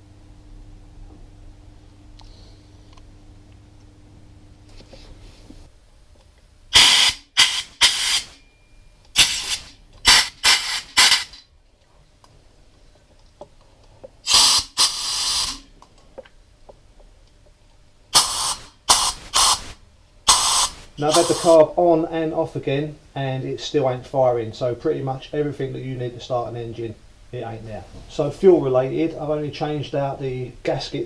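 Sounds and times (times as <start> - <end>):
pressurised spray hissing: 6.8 - 8.4, 9.2 - 11.4, 14.3 - 15.7, 18.1 - 21.6.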